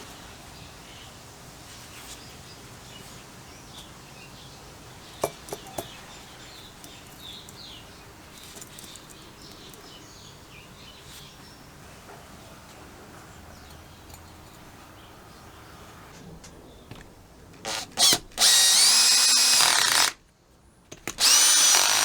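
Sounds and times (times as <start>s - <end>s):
small birds chirping: 0.0s - 17.3s.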